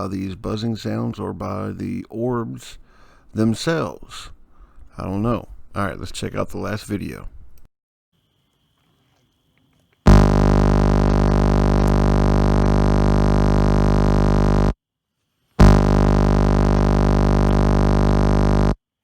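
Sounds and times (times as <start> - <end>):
loud electronic buzz: 10.1 - 14.8, 15.6 - 18.8.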